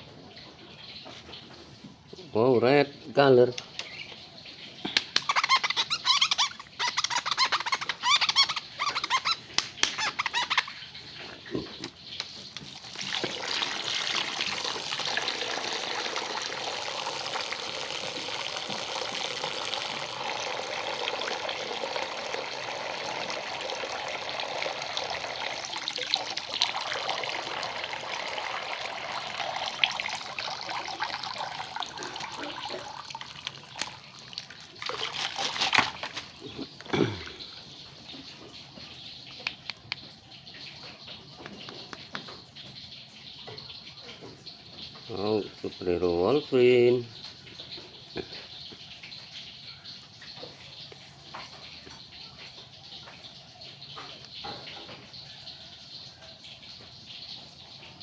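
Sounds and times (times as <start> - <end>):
running water stream: 0.9 - 58.0
water splashing: 4.8 - 37.8.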